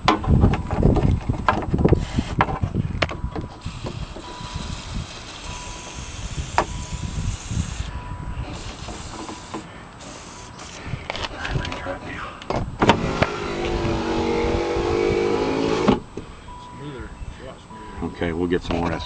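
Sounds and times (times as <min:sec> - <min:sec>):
parts knocking and clattering: 0:00.0 - 0:04.3
aerosol spray hissing: 0:03.6 - 0:07.9, 0:08.5 - 0:10.8.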